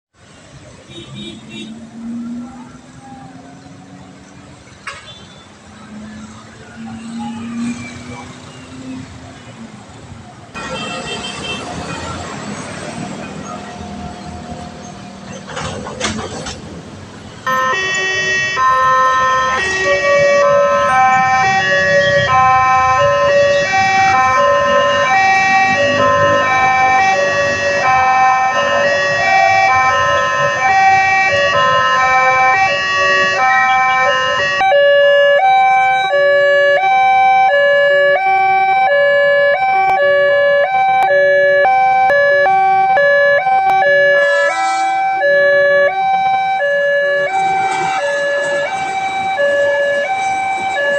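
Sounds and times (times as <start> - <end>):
traffic noise: 0.1 - 50.9
level crossing warning siren: 17.4 - 50.9.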